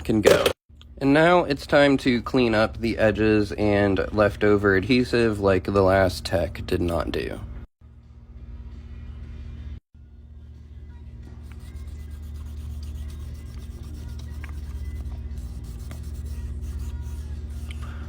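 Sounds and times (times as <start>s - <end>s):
background music with low bass: 7.4s - 18.0s
faint scratching of adhesive: 11.4s - 17.9s.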